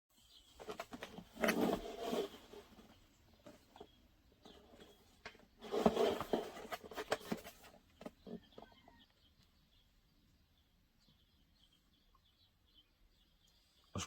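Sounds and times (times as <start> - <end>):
rustling handling noises: 0.5 - 8.7
faint bird chirps: 7.9 - 14.0.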